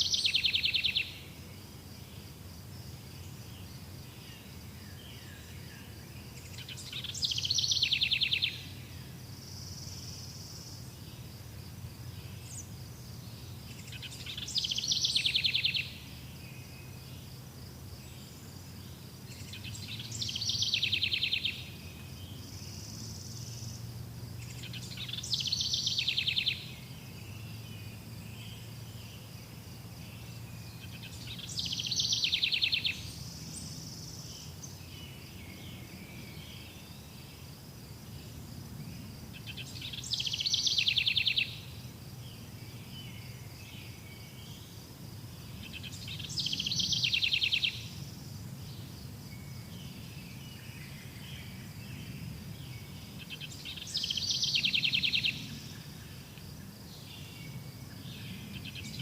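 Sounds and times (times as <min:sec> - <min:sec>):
insects droning: 0:00.0 - 0:59.0
songbird singing with trill: 0:00.0 - 0:59.0.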